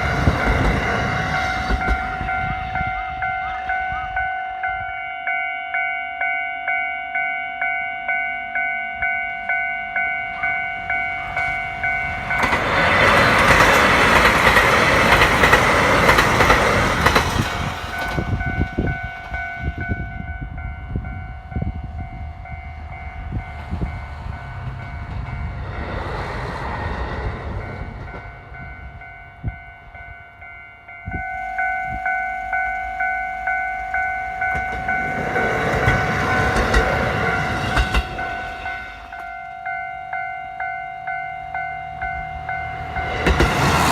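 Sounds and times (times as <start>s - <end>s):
diesel train rushing past: 0.0s - 43.9s
level crossing bell ringing: 1.9s - 13.5s, 28.2s - 43.4s
train wheels clicking over rail joints: 11.8s - 18.7s, 33.9s - 39.4s, 42.8s - 43.9s.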